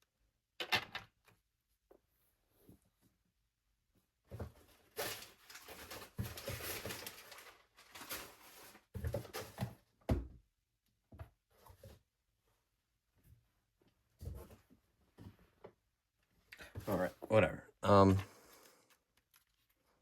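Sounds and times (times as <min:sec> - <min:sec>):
packaging rustling and clattering: 0:04.4 - 0:09.9.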